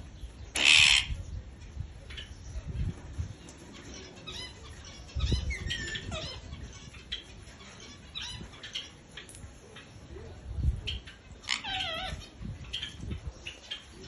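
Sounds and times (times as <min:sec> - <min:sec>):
parrot harsh call: 0:00.6 - 0:01.2, 0:11.4 - 0:12.2.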